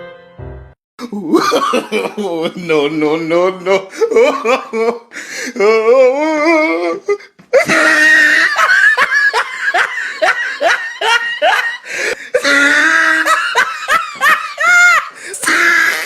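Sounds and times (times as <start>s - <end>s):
high-pitched squealing laughter: 7.6s - 9.5s, 12.4s - 16.0s.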